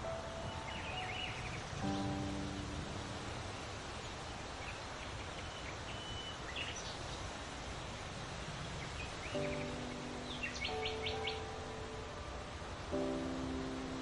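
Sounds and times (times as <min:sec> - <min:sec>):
soft music: 0:00.0 - 0:04.7, 0:09.0 - 0:14.0
songbird chirps and whistle: 0:00.0 - 0:07.3, 0:08.8 - 0:12.2
outdoor background noise: 0:00.0 - 0:14.0.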